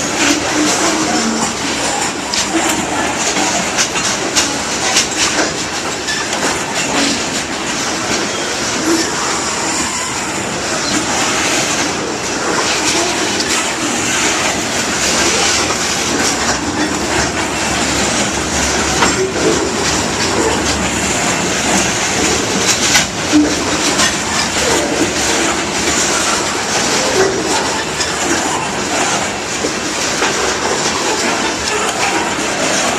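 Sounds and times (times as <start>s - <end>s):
freight train rumbling on rails: 0.0s - 32.9s
wheels clacking over rail joints: 0.0s - 32.9s
wheel squeal: 6.0s - 7.3s, 8.1s - 29.3s.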